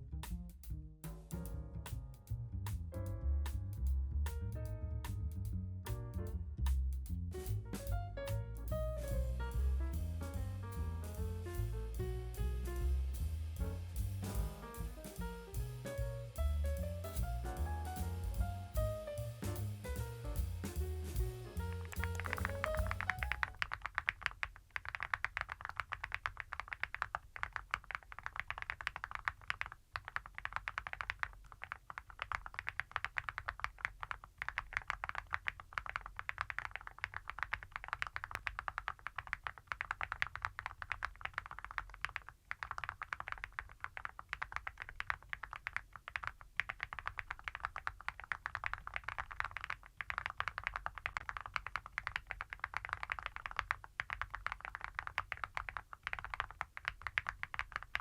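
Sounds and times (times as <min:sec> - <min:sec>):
mechanical keyboard typing: 0:21.8 - 0:58.0.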